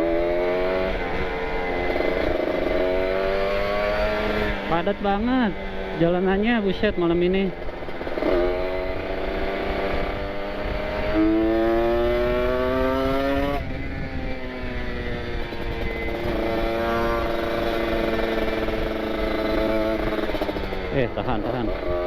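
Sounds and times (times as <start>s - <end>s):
two-stroke motorcycle engine: 0.0s - 22.0s.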